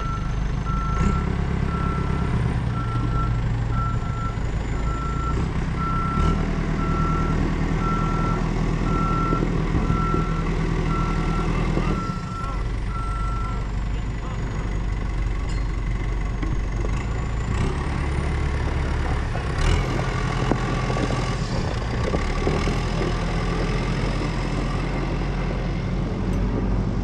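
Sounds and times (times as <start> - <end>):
reversing alarm beeping: 0.0 - 13.6
diesel engine running and revving: 0.0 - 27.0.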